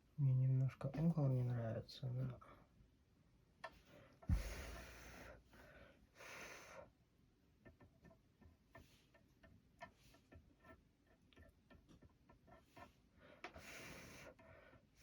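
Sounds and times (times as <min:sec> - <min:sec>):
soft thump: 0:04.3 - 0:04.9.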